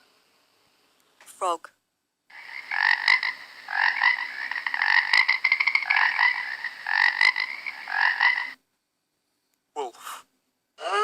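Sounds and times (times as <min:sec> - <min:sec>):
frog croaking: 0:02.3 - 0:08.6.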